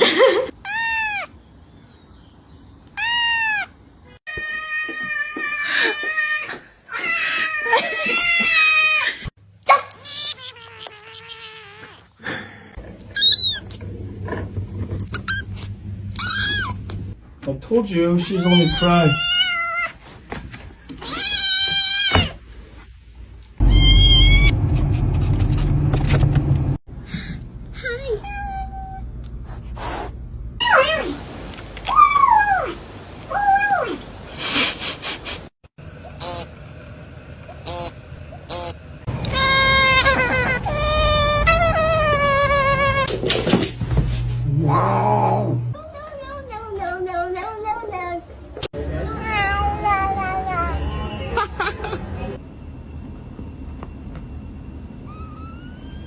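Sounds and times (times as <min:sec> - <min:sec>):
cat meowing: 0:10.0 - 0:12.1, 0:18.2 - 0:19.9, 0:23.6 - 0:24.5
loud low rumble: 0:23.6 - 0:28.0
high-pitched cry: 0:39.2 - 0:43.1.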